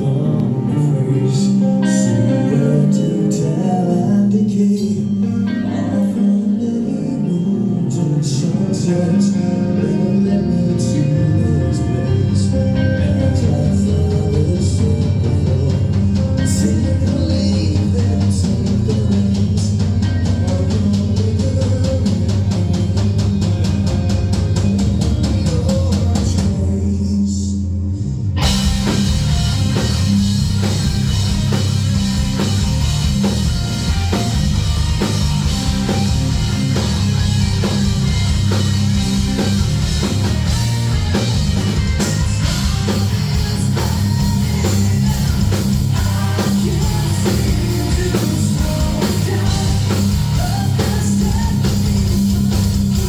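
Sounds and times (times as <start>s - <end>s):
heavy metal band playing live: 0.0s - 27.2s, 28.0s - 53.0s
drum kit with cymbals: 13.2s - 26.8s, 28.4s - 53.0s.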